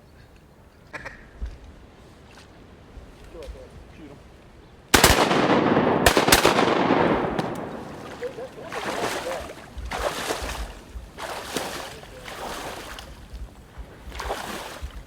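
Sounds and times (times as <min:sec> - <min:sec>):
shotgun volley echo: 0:05.0 - 0:08.7
water splashing: 0:05.2 - 0:15.0.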